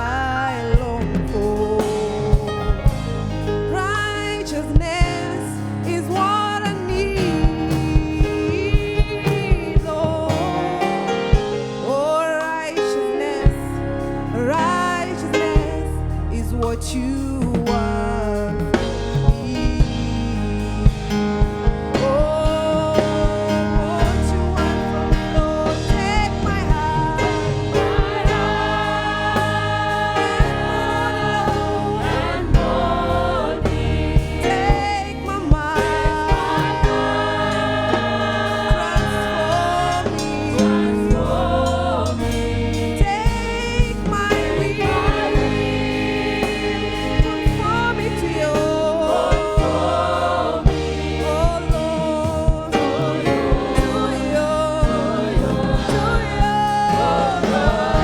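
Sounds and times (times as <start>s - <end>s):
gospel choir singing: 0.0s - 58.0s
worship band playing: 0.0s - 58.0s
drum hits: 20.8s - 54.2s.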